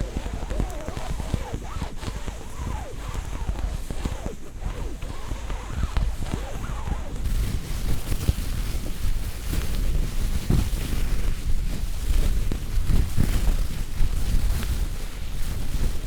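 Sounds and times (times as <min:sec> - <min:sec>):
scratching on textured objects: 0:00.0 - 0:16.0.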